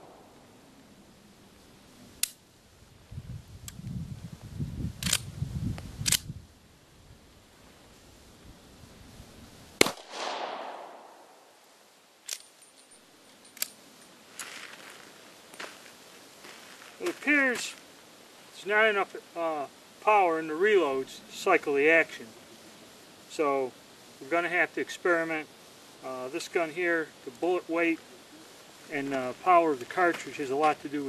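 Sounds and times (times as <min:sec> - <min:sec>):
metallic clicks of gun handling: 0:05.0 - 0:05.3, 0:12.2 - 0:14.5
pistol shot with echo: 0:09.8 - 0:11.4.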